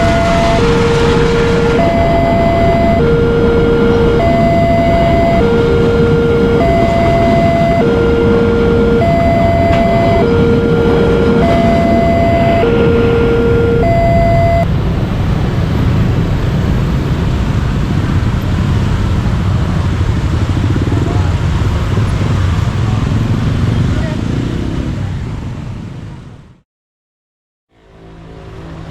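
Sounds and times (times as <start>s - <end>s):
level crossing two-tone signal: 0.0s - 14.7s
steady low rumble: 0.0s - 18.6s.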